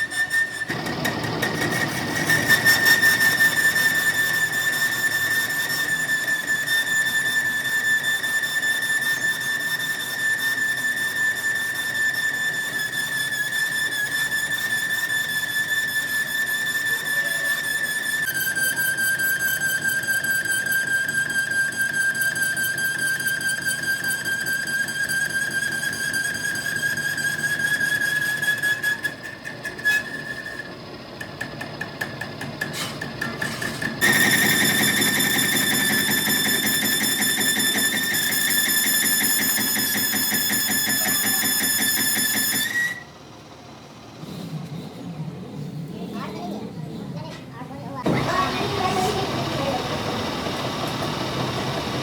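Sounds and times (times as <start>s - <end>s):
metal machining squeal: 0.0s - 52.0s
faint rapid chatter: 16.8s - 19.3s, 44.8s - 50.5s.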